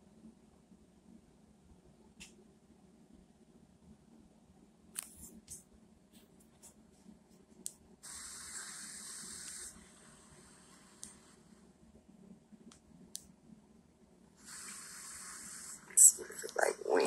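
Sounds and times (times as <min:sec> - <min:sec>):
steady hiss: 0:05.0 - 0:13.3, 0:14.3 - 0:17.0.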